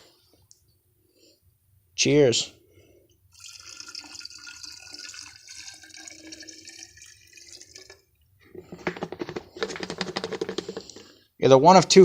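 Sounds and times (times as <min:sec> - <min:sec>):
sharp clicks and rattles: 0:08.6 - 0:11.2.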